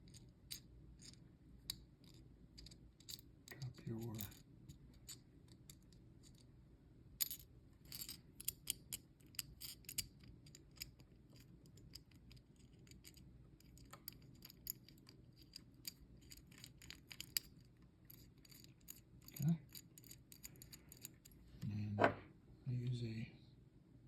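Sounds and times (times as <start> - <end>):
small metal clicks and ticks: 7.2 - 21.4.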